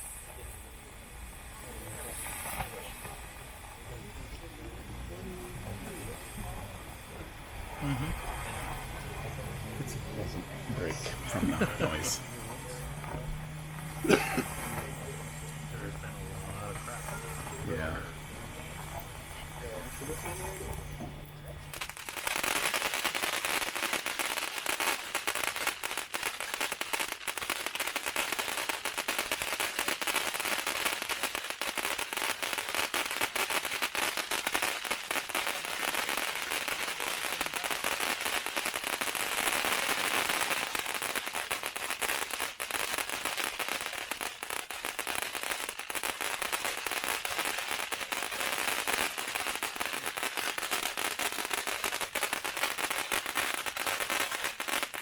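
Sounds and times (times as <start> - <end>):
firework fountain hissing and crackling: 0.0 - 55.0.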